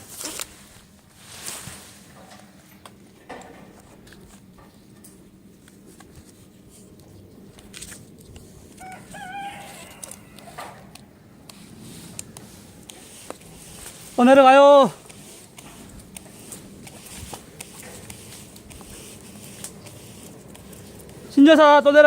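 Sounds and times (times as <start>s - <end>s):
faint animal call: 8.8s - 10.9s.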